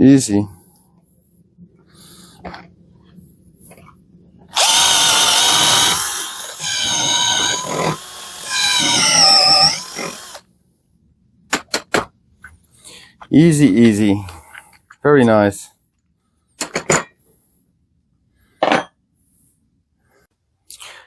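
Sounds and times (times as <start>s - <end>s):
cordless drill motor whining: 4.5s - 10.4s.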